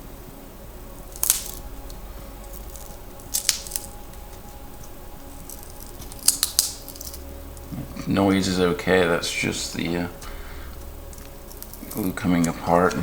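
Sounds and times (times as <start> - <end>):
adhesive cracking and snapping: 1.1 - 7.9, 10.2 - 13.0.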